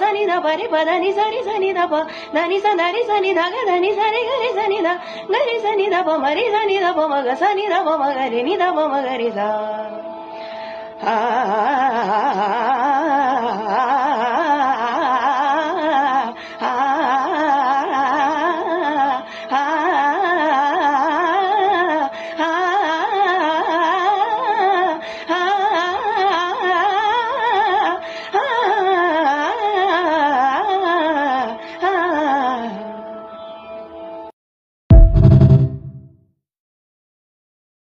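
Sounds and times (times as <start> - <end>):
steady drone note: 34.9 - 36.1.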